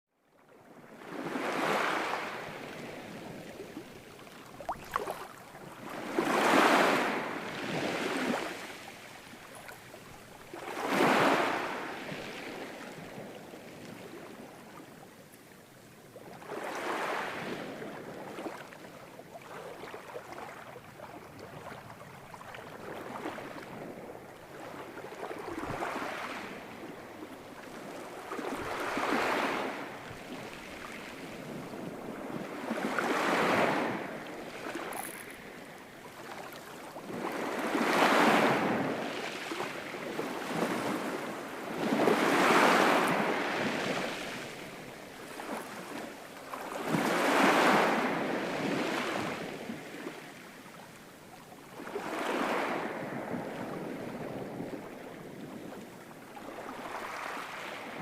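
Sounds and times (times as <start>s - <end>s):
ocean waves breaking: 0.8s - 14.5s, 22.6s - 50.6s.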